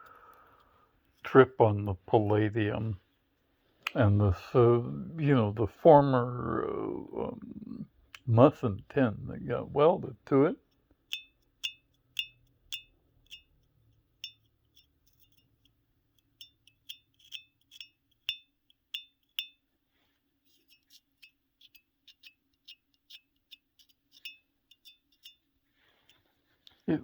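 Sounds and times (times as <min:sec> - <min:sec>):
metal taps ringing like a bell: 0:11.1 - 0:13.5, 0:14.2 - 0:14.5, 0:16.4 - 0:19.6.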